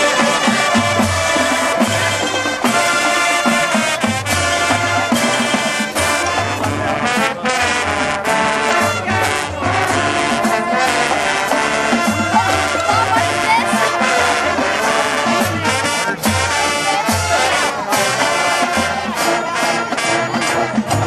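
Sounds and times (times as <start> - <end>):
brass section playing tune: 0.0 - 21.0.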